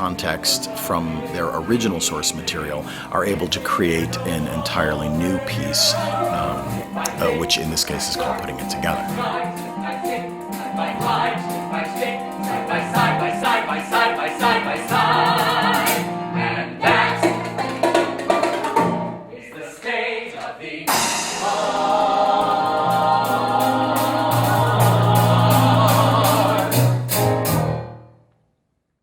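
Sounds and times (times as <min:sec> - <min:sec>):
musical theatre song by several voices: 0:00.0 - 0:27.8.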